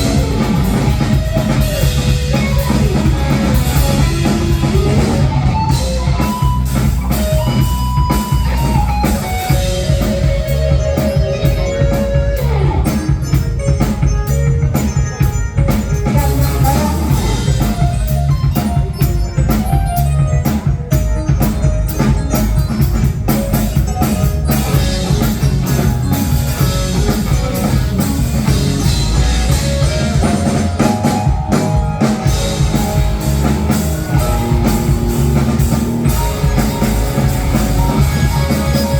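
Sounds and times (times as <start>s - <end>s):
lead guitar sliding down: 0.0s - 13.6s, 23.7s - 38.9s
busy drum groove: 0.0s - 38.9s
rock band playing instrumental: 0.0s - 38.9s.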